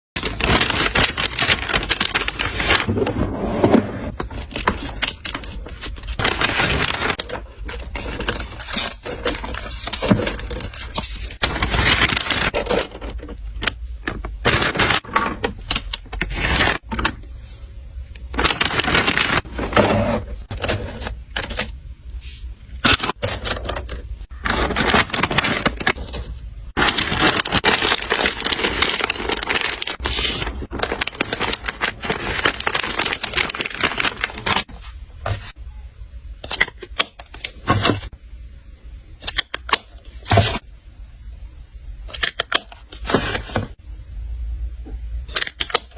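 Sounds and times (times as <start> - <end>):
plastic packaging crinkling: 0.2 - 17.1, 18.3 - 35.6.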